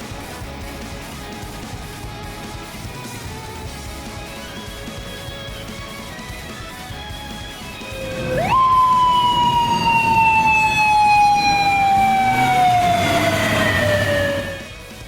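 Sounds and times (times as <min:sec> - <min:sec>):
motorcycle siren wail: 0:07.1 - 0:15.0.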